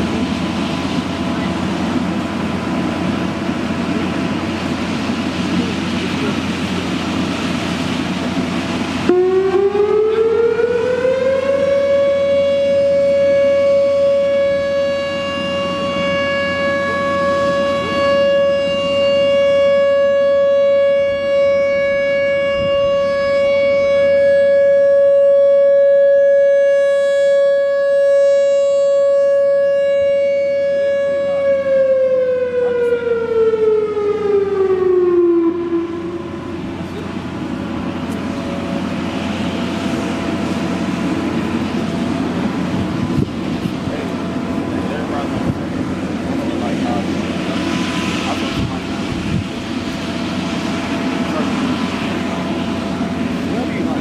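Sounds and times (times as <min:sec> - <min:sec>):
outdoor warning siren: 0:00.0 - 0:54.0.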